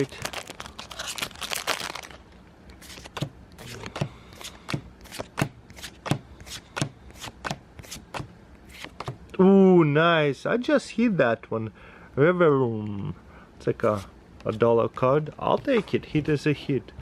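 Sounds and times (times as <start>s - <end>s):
foil wrapper crinkling: 0.0s - 3.2s.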